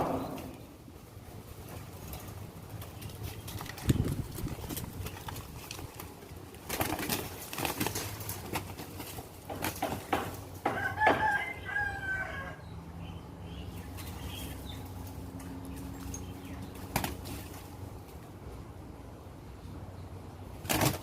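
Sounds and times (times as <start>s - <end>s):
rooster flapping wings: 2.8s - 10.4s, 16.8s - 17.7s, 20.6s - 21.0s
rooster crowing: 10.6s - 12.7s.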